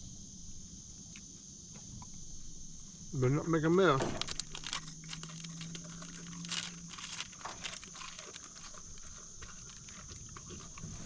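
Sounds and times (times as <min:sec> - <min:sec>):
cracker packet crinkling: 0:04.0 - 0:10.9
crackers crunching: 0:04.0 - 0:11.0.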